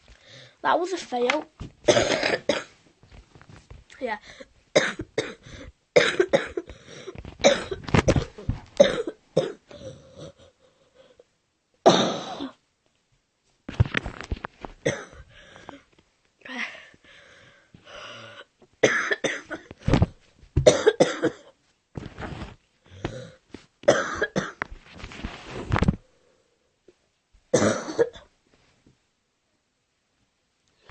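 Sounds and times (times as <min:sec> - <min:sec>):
person coughing: 0:01.9 - 0:02.7, 0:04.8 - 0:10.4, 0:11.9 - 0:12.6, 0:14.8 - 0:15.9, 0:18.8 - 0:19.7, 0:20.6 - 0:21.6, 0:23.0 - 0:24.6, 0:27.6 - 0:28.3.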